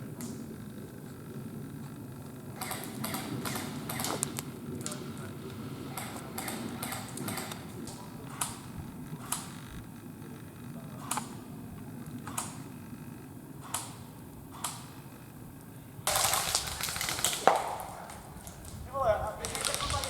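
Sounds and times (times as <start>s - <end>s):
airsoft guns firing: 2.5s - 5.2s, 5.8s - 10.4s, 13.6s - 15.2s, 16.0s - 18.8s, 19.4s - 20.0s.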